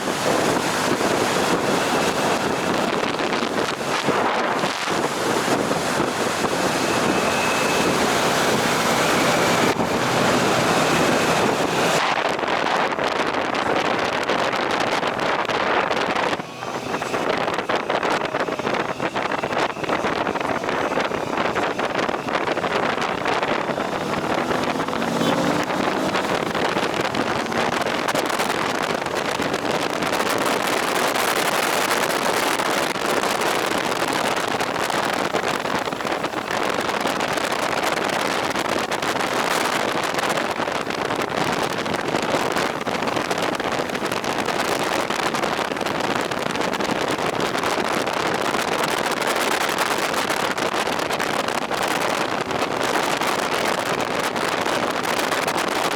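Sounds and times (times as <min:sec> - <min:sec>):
motorcycle engine running: 0:00.0 - 0:55.9
wind rushing over microphone: 0:00.0 - 0:55.9.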